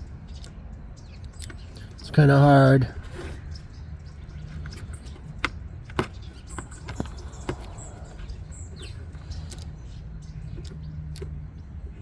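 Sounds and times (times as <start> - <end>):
sharp clicks: 8.8 - 9.8.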